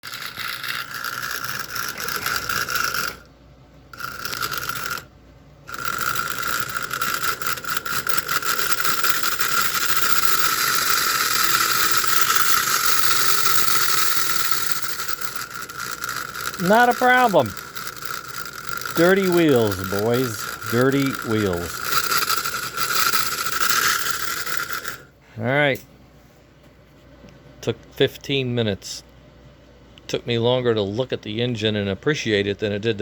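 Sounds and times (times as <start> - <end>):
toy train motor whine and clicking: 0.0 - 3.3, 3.9 - 5.1, 5.7 - 25.1.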